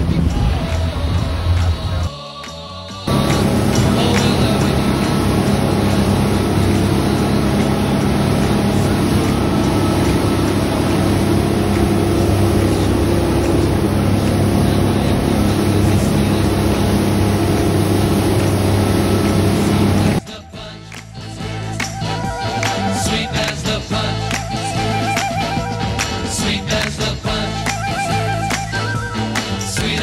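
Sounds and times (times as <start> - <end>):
boat engine droning: 2.8 - 20.2, 21.6 - 26.4
water rushing: 3.1 - 20.2.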